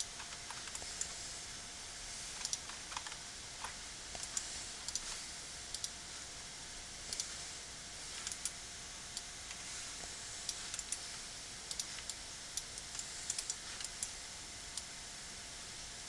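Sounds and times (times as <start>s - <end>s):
faint steady hiss: 0.0s - 16.0s
mouse and keyboard clicks: 2.4s - 5.2s, 12.8s - 14.1s.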